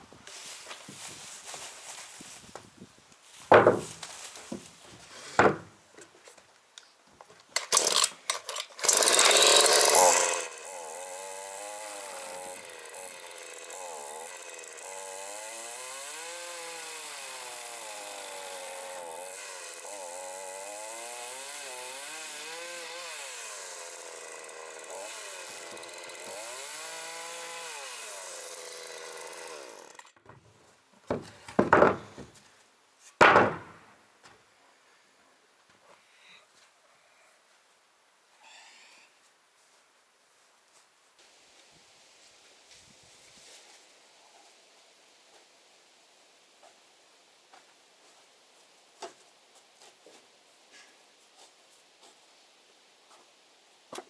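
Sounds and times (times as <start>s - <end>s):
loud knocks: 3.5s - 4.0s, 31.1s - 32.3s, 33.2s - 33.9s
wood being sawn: 7.6s - 8.1s, 8.7s - 30.1s.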